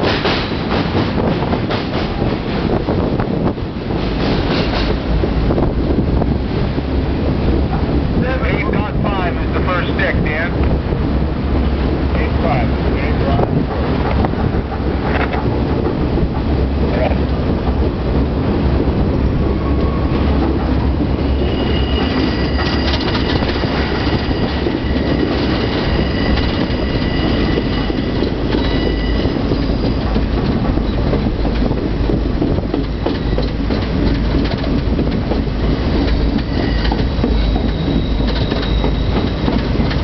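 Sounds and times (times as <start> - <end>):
train rumbling on rails: 0.0 - 40.0
train wheels squealing: 19.5 - 20.4, 21.1 - 30.1, 32.8 - 33.7, 35.6 - 40.0.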